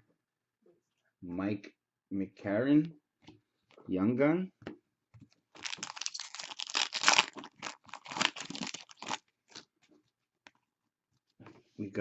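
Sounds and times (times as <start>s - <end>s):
wrapper crinkling and tearing: 5.6s - 9.6s.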